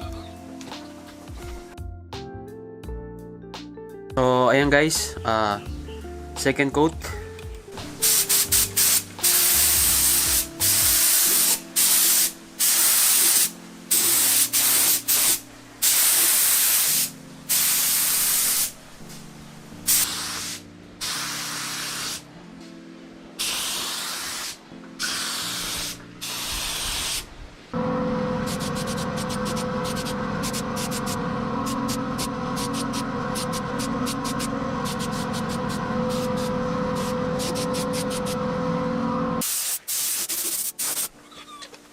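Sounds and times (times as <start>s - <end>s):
background music: 0.0s - 26.9s
spray can hissing: 7.9s - 18.8s, 19.9s - 22.2s, 23.4s - 27.3s, 28.4s - 38.4s, 39.4s - 41.2s.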